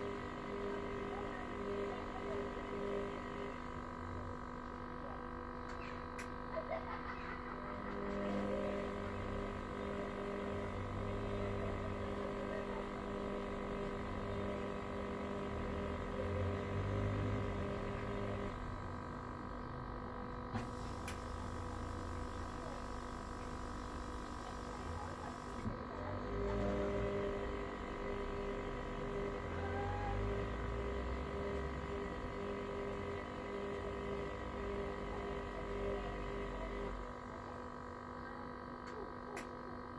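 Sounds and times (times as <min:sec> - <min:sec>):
steady background hum: 0:00.0 - 0:39.9
washing machine drum humming: 0:00.0 - 0:39.9.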